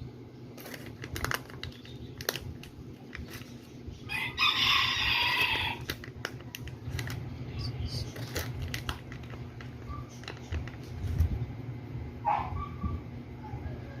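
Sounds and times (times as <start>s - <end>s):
rooster crowing: 4.0s - 5.9s.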